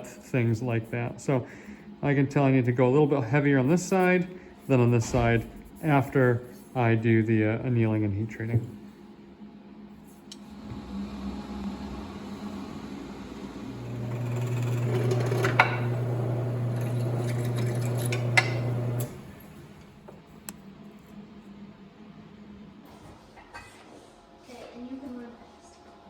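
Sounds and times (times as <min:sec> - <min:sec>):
machine humming: 0:10.3 - 0:20.1.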